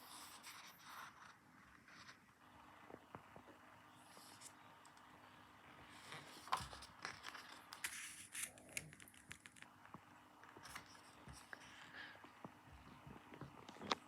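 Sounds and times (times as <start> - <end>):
paper crinkling and rustling: 6.0 - 9.7
small crackles: 6.0 - 14.0.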